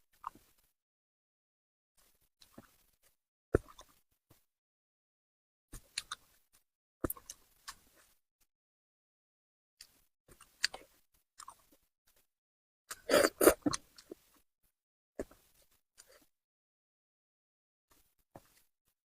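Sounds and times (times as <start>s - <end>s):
wet chewing and smacking: 3.6s - 4.0s, 5.8s - 6.4s, 7.0s - 7.9s, 9.8s - 11.8s.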